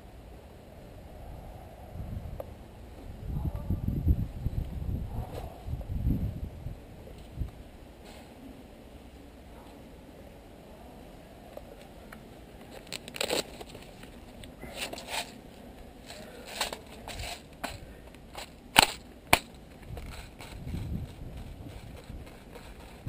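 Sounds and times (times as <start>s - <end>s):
sharp cracks and crunches: 12.6s - 23.0s.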